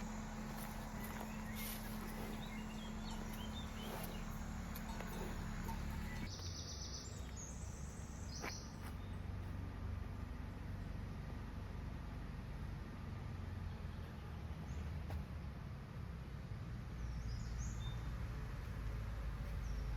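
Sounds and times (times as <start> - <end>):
river water rushing: 0.0 - 6.3
bird chirps: 0.0 - 9.2.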